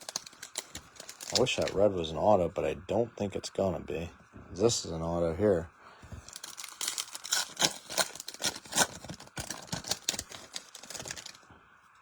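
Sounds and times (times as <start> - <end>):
trading cards clicking and rustling: 0.0 - 1.8, 6.1 - 11.4.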